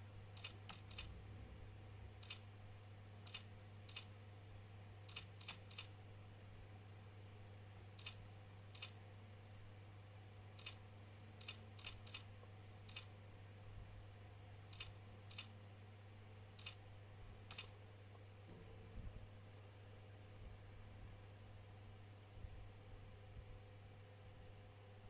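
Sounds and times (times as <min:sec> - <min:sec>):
faint low hum: 0:00.0 - 0:25.0
computer keys clicking: 0:00.4 - 0:01.1, 0:02.2 - 0:02.4, 0:03.2 - 0:04.1, 0:05.1 - 0:05.9, 0:08.0 - 0:09.0, 0:10.6 - 0:10.8, 0:11.4 - 0:12.3, 0:12.9 - 0:13.1, 0:14.7 - 0:15.5, 0:16.6 - 0:16.8, 0:17.5 - 0:17.8.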